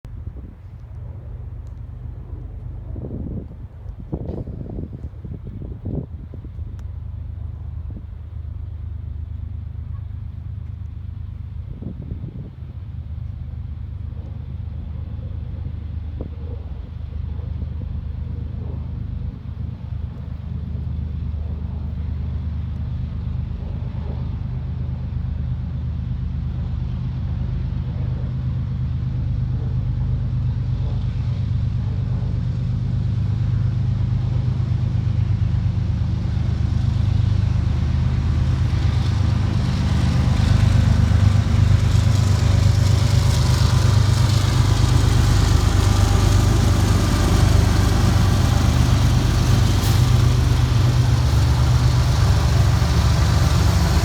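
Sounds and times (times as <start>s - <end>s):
locomotive engines droning: 12.6s - 54.0s
wheels clattering on rail: 21.1s - 54.0s.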